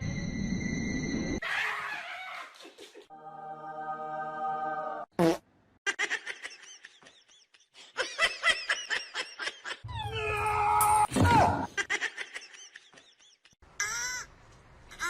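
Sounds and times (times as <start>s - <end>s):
hearty laughter: 5.9s - 9.8s, 11.7s - 13.6s.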